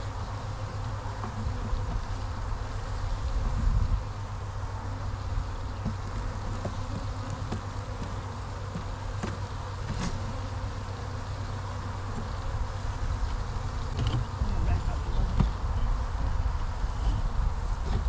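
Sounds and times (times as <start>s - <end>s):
bees buzzing: 0.0s - 18.0s.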